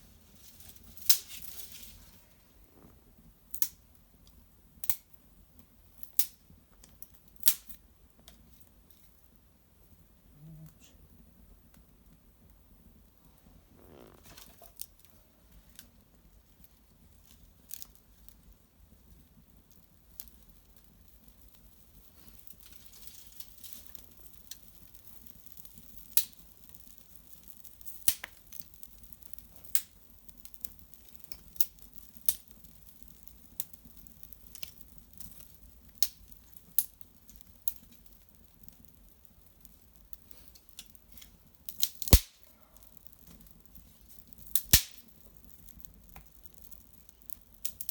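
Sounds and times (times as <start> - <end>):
fire crackling: 0.0 - 47.9
sharp pops of fire: 0.4 - 1.9, 2.6 - 9.2, 19.1 - 47.9
loud wood snap: 41.9 - 42.4, 44.6 - 45.0.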